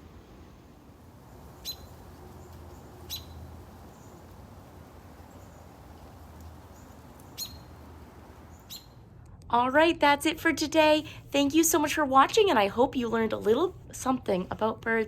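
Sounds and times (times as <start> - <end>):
low rumble of wind: 0.0 - 15.0
songbird chip calls: 1.6 - 3.4, 6.7 - 7.8, 8.5 - 9.0.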